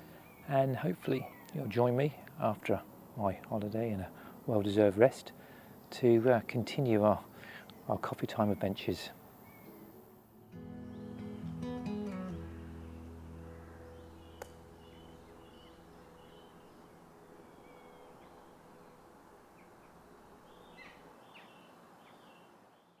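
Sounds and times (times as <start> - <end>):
small birds chirping: 0.0 - 10.1, 10.8 - 23.0
guitar chord: 10.4 - 16.4.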